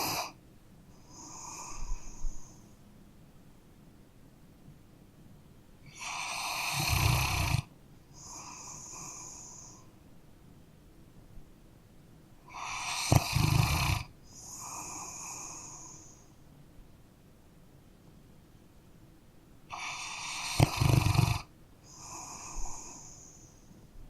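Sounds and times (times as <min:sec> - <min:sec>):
dog snoring: 0:00.0 - 0:00.4, 0:01.0 - 0:02.6, 0:05.9 - 0:09.9, 0:12.5 - 0:16.2, 0:19.7 - 0:23.5.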